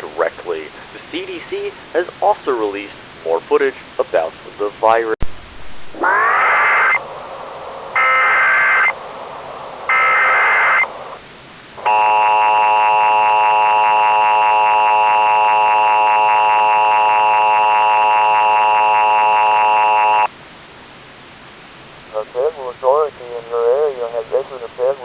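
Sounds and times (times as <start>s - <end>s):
harsh electronic data bursts: 5.6s - 7.0s, 7.9s - 11.2s, 11.8s - 20.3s
two-tone alarm: 6.0s - 7.0s, 7.9s - 9.0s, 9.8s - 11.2s, 11.8s - 20.3s.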